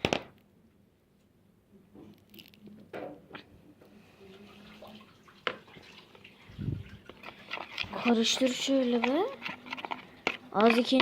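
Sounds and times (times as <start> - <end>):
slime squishing in a bowl: 6.0 - 11.0.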